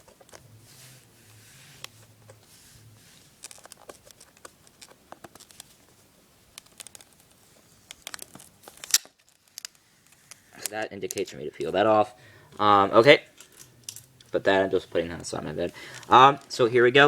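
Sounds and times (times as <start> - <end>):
plastic wrap crackling: 1.0 - 9.8.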